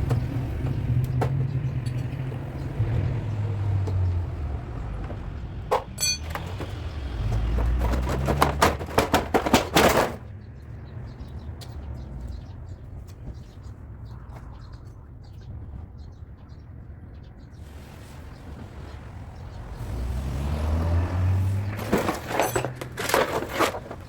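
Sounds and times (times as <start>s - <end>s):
vehicle engine rumbling: 0.0s - 24.0s
sharp metal knocks: 5.7s - 6.8s
ringing metallic clink: 6.0s - 6.4s.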